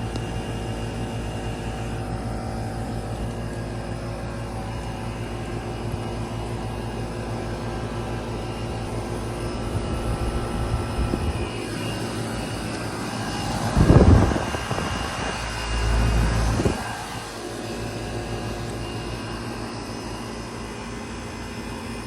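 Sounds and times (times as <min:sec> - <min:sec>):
air conditioner hum: 0:00.0 - 0:22.0
loud low rumble: 0:08.8 - 0:11.8, 0:13.4 - 0:17.4.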